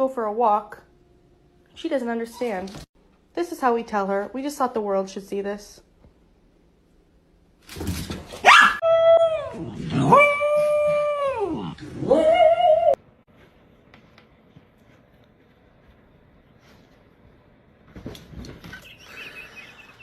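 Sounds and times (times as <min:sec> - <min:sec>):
dog yelping: 0:08.4 - 0:10.7
dog howling: 0:08.5 - 0:13.0.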